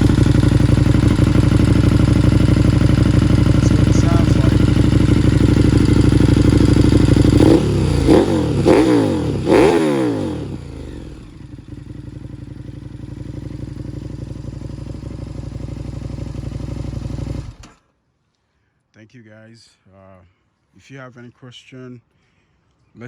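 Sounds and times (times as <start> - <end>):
motorcycle engine revving and idling: 0.0 - 17.8.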